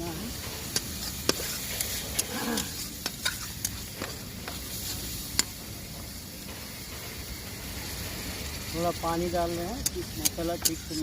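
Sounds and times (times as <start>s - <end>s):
masala sizzling in oil: 0.0s - 11.0s
utensil scraping pan: 0.3s - 5.5s.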